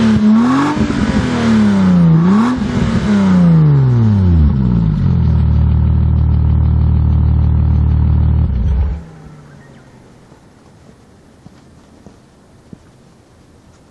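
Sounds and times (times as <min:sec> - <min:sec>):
car engine revving and idling: 0:00.0 - 0:10.4.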